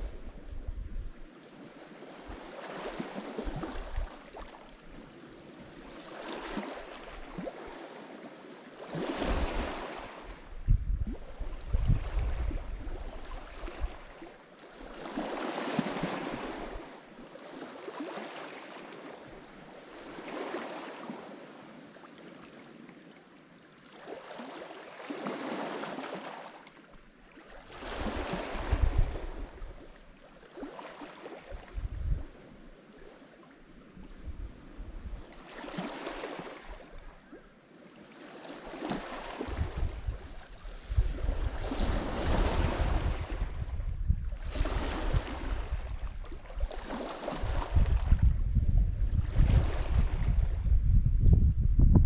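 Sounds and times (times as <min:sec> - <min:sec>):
wind rumble on microphone: 0:00.0 - 0:01.3, 0:03.4 - 0:04.5, 0:09.0 - 0:14.3, 0:27.7 - 0:30.0, 0:31.5 - 0:32.8, 0:33.8 - 0:35.8, 0:39.2 - 0:52.0
waves breaking on shore: 0:00.0 - 0:50.6.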